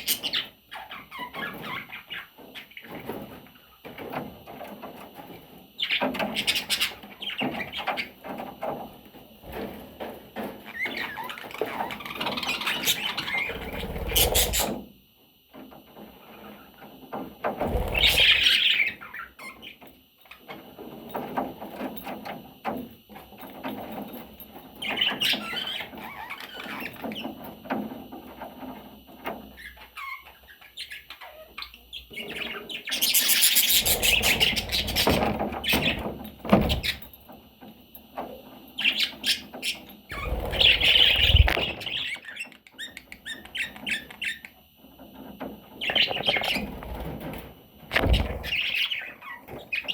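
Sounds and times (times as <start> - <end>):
budgerigar chirping: 12.4 - 14.8, 31.9 - 35.9.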